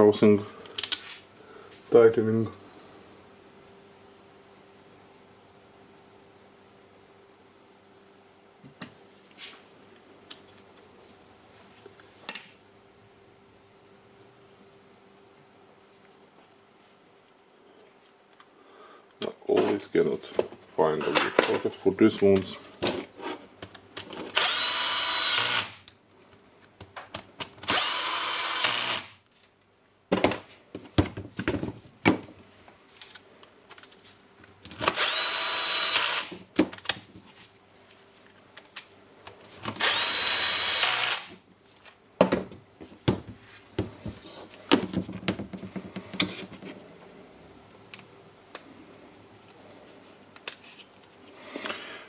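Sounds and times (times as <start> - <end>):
cordless drill motor whine: 24.3 - 25.8, 27.6 - 29.2, 34.8 - 36.4, 39.7 - 41.4.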